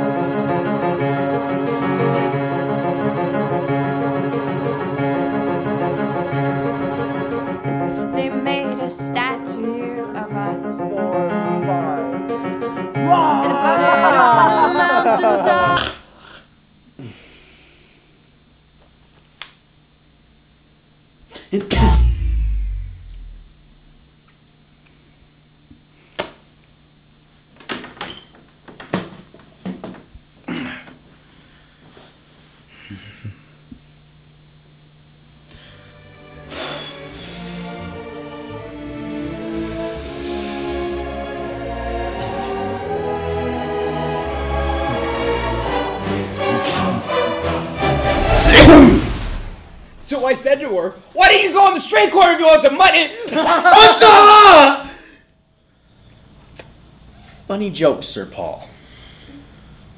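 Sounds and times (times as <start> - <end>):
piano: 0.0 - 15.0, 35.9 - 50.1
bass line: 21.7 - 24.0, 48.0 - 50.1
steady low hum: 21.7 - 24.2, 48.2 - 51.2.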